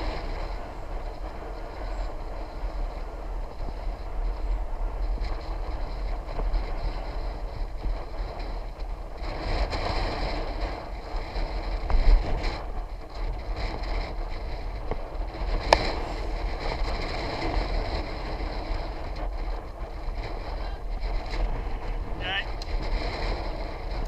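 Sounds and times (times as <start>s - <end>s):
rolling noise: 0.0s - 24.0s
wind buffeting microphone: 0.0s - 24.0s.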